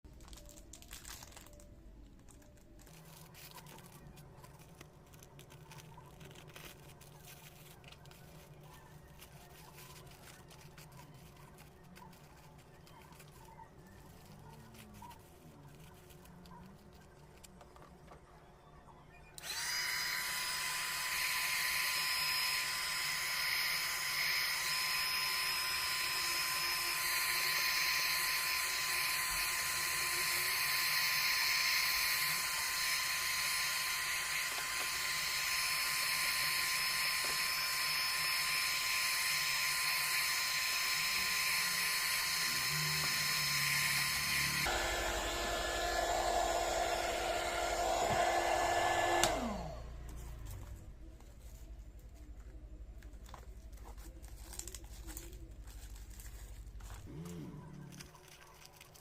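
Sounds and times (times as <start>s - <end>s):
hot air gun running: 19.4s - 49.9s.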